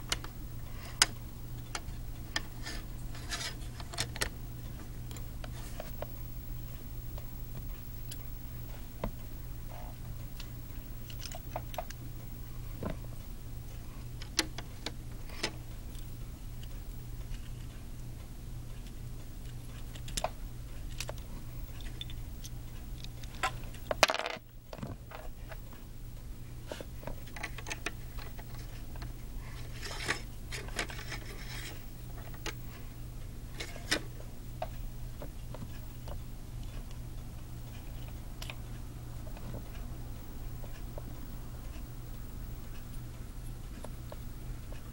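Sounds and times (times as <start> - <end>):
steady low hum: 0.0 - 44.9
plastic bricks clicking and rattling: 23.9 - 24.9.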